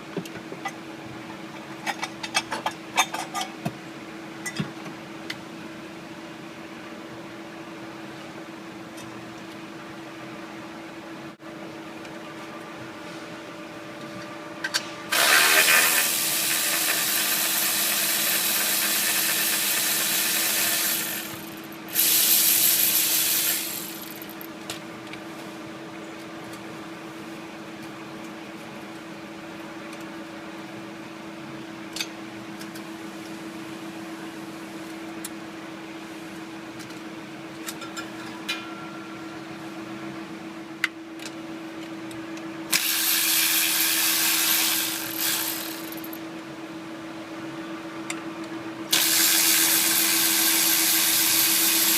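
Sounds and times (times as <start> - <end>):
loud steady hisses: 15.1 - 24.4, 48.9 - 51.9
steady low hum: 19.1 - 42.7.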